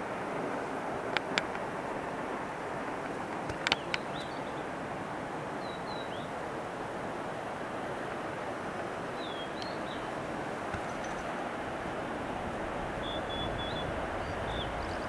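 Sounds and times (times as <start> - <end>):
waterfall rushing: 0.0 - 15.0
bird chirps: 9.2 - 10.1, 13.0 - 15.0.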